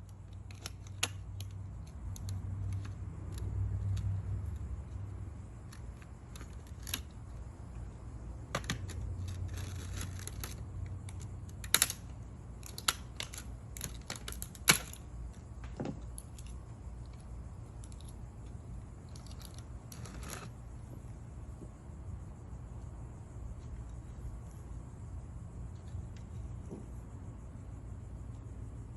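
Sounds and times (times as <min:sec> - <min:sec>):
plastic clicks and cracks: 0:08.5 - 0:17.2.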